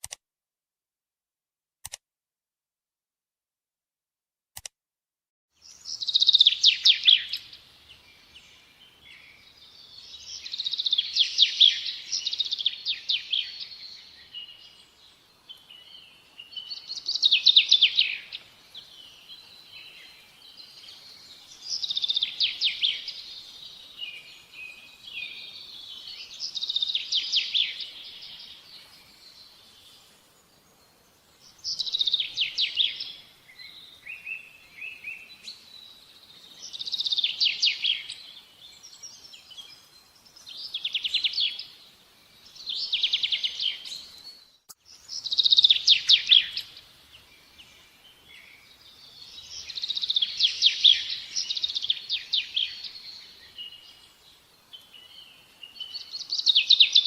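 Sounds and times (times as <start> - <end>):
short click: 0.0 - 0.2
songbird singing trilled phrases: 5.6 - 30.0, 30.8 - 57.0
soft bird chirps: 5.6 - 57.0.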